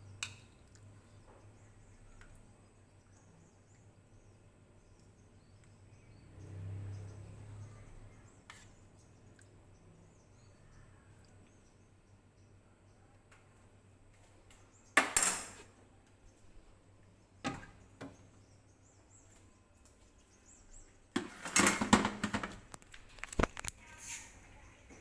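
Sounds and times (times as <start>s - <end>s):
hard objects clattering and knocking: 21.2s - 23.7s.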